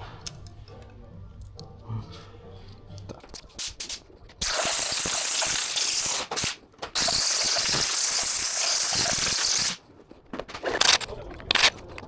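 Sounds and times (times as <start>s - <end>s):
air ratchet hissing and clicking: 3.6s - 9.8s.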